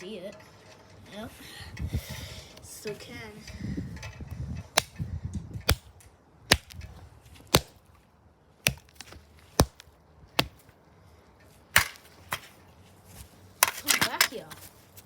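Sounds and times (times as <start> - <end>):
hard blows striking plastic toy car: 4.7 - 6.9.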